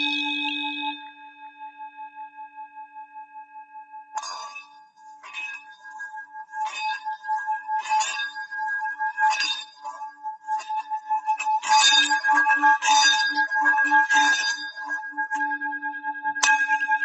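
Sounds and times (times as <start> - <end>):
singing bowl struck clang: 0.0 - 1.1, 4.2 - 4.7
singing bowl ringing hum: 0.0 - 2.8, 4.2 - 17.0.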